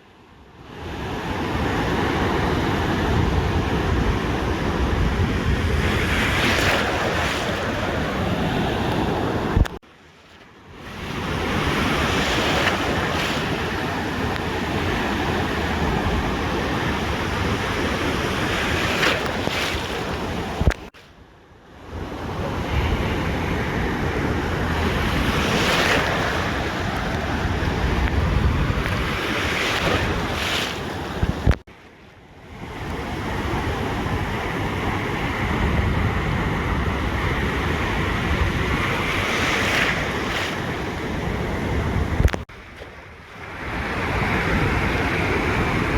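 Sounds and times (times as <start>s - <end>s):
ocean surf washing onto beach: 0.6s - 9.8s, 10.4s - 21.1s, 21.8s - 31.7s, 32.4s - 45.9s
wind buffeting microphone: 1.9s - 9.8s, 22.0s - 31.6s, 32.6s - 42.5s.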